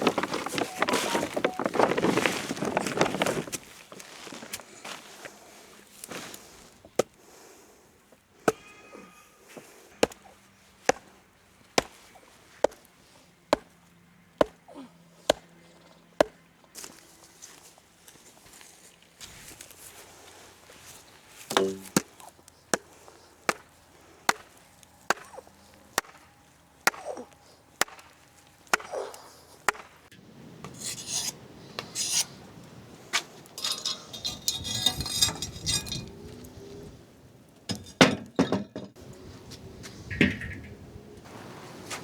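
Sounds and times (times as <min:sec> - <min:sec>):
rustling and scraping: 0:00.0 - 0:07.0, 0:30.6 - 0:36.9, 0:38.9 - 0:42.0.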